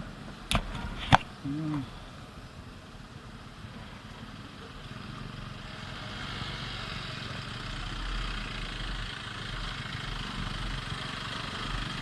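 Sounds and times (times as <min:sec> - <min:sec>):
wind noise on microphone: 0:00.0 - 0:02.4
motorcycle engine running: 0:00.0 - 0:12.0.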